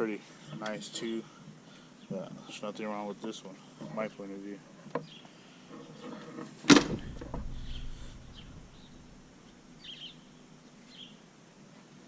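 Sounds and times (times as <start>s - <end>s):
truck door shutting: 6.7s - 9.6s.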